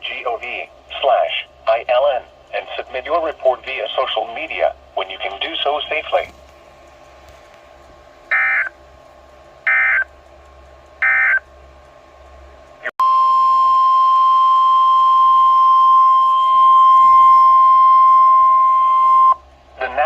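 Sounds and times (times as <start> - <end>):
steady warning alarm tone: 8.3 - 8.8, 9.6 - 10.1, 11.0 - 11.5, 12.9 - 20.0.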